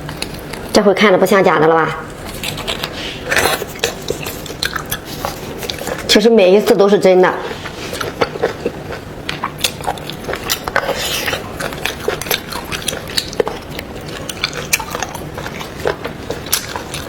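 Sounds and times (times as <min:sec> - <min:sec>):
wet chewing and biting: 0:02.2 - 0:06.1, 0:07.6 - 0:17.0.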